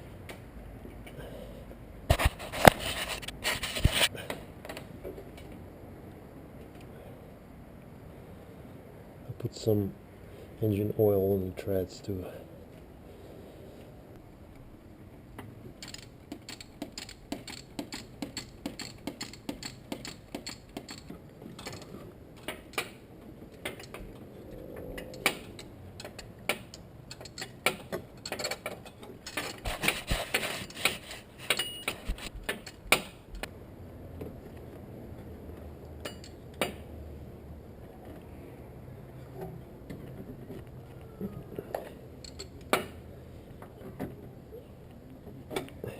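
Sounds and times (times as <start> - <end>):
ratchet wrench clicking: 15.8 - 21.8.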